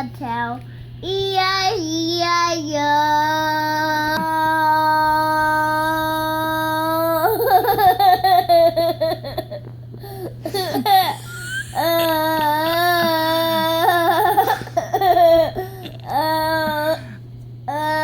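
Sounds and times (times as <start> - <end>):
child singing and babbling: 1.0 - 7.4.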